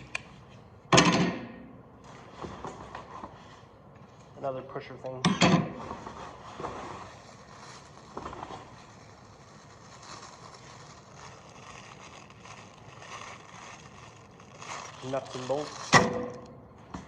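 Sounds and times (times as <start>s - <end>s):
packaging rustling: 6.0s - 16.4s.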